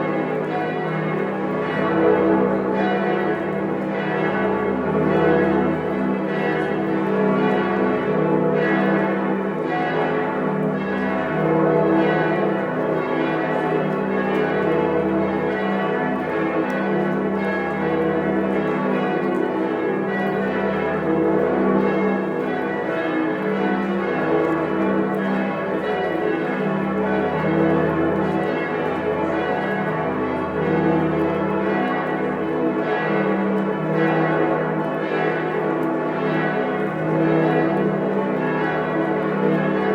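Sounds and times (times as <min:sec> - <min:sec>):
church bells pealing: 0:00.0 - 0:39.9.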